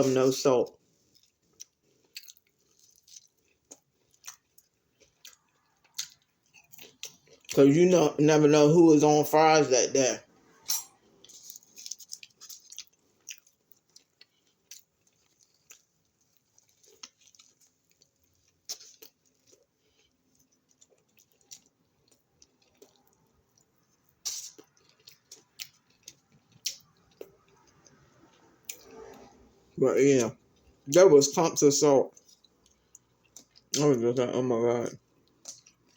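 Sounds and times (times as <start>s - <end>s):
person chewing food: 0.8s - 7.6s, 10.5s - 29.5s, 32.1s - 33.8s, 35.0s - 35.9s.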